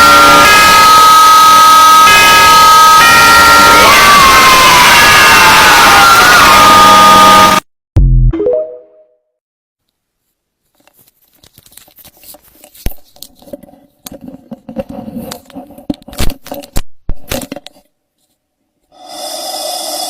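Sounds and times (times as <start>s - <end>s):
crinkling and crackling with clicks: 10.7s - 17.9s.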